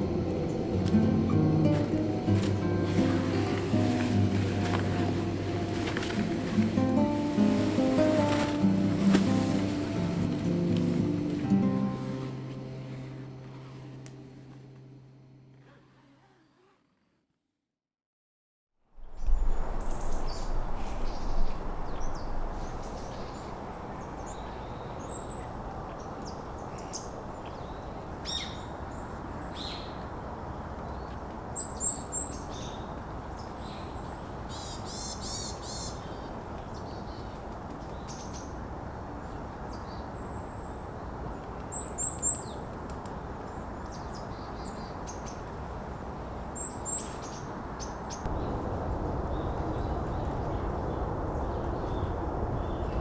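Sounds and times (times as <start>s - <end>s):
steady background hiss: 0.0s - 15.5s.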